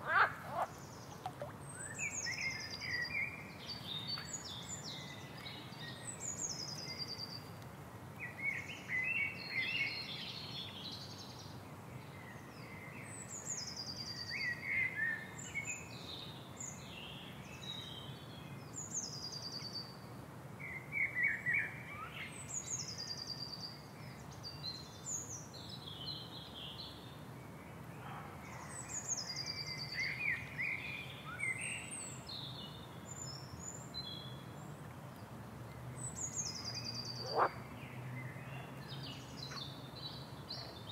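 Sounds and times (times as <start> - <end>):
birds singing and chirping: 36.0 - 37.6.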